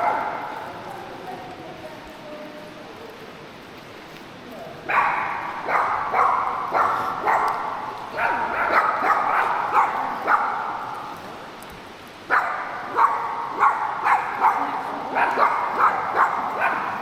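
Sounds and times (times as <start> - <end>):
dog barking: 0.0 - 0.5, 4.9 - 10.8, 12.3 - 17.0.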